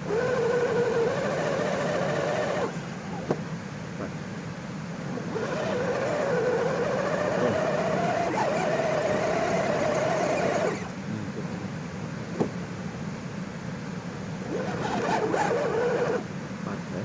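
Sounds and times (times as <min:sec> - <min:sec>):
small electric motor whining: 0:00.0 - 0:03.4, 0:05.0 - 0:11.0, 0:14.4 - 0:16.3.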